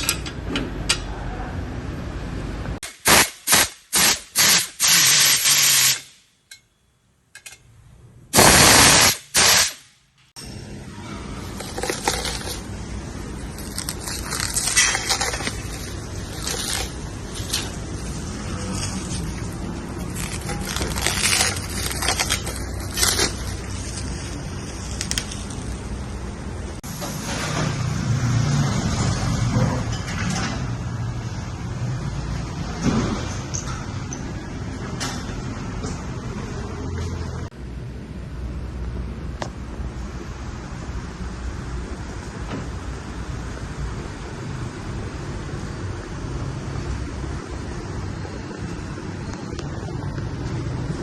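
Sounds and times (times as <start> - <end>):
short hissing bursts: 3.0 - 6.2
packing material crumpling: 13.5 - 17.8, 18.6 - 25.7.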